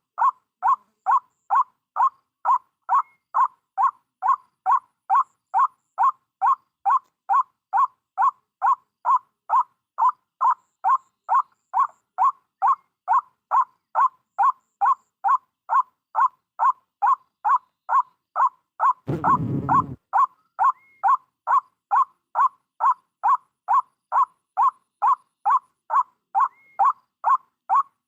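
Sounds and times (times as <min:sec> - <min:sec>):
bird calling repeated note: 0:18.8 - 0:27.9.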